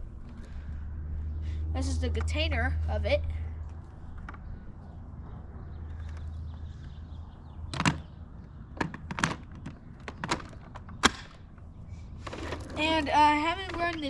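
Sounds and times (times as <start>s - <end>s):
plastic clicks and knocks: 8.8s - 11.4s.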